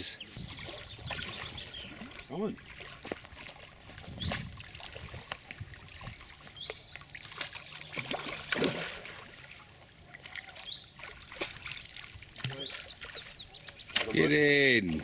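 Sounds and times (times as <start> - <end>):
bird chirp: 0.0 - 2.6, 4.1 - 4.5, 5.5 - 8.5, 10.2 - 14.4
water splashing and trickling: 0.0 - 15.0.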